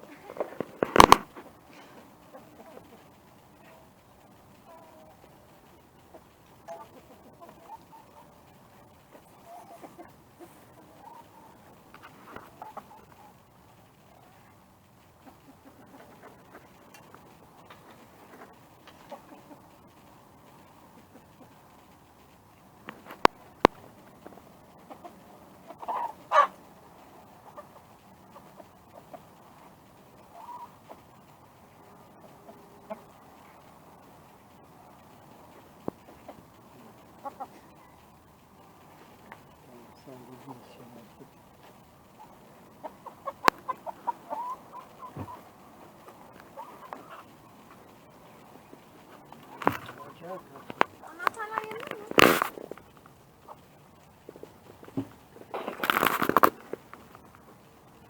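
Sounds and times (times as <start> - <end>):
chickens clucking: 0.0 - 58.0
small ticks: 0.2 - 58.0
chicken squawk: 25.0 - 26.6, 30.2 - 30.9, 37.2 - 38.0, 42.2 - 45.5, 46.4 - 47.4.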